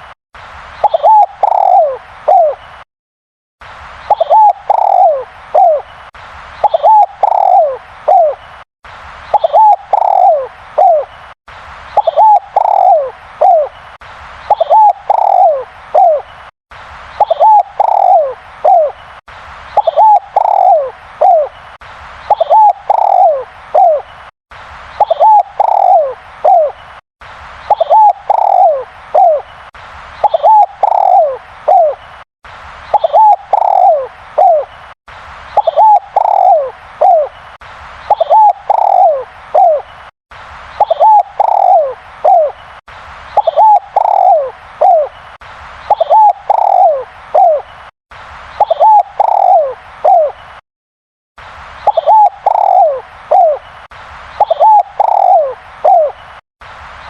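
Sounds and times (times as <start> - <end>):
dove cooing loudly: 0.8 - 2.6, 4.1 - 5.8, 6.6 - 8.4, 9.4 - 11.1, 12.0 - 13.7, 14.5 - 16.2, 17.2 - 19.0, 19.8 - 21.5, 22.3 - 24.0, 25.0 - 26.8, 27.7 - 29.4, 30.2 - 32.0, 33.0 - 34.7, 35.6 - 37.3, 38.1 - 39.8, 40.8 - 42.6, 43.4 - 45.1, 45.9 - 47.6, 48.6 - 50.4, 51.9 - 53.6, 54.4 - 56.2.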